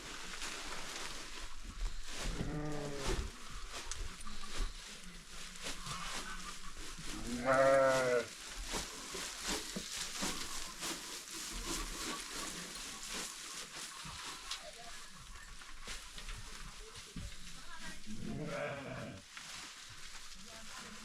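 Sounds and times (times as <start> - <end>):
goat bleating: 7.3 - 8.3, 18.2 - 19.2.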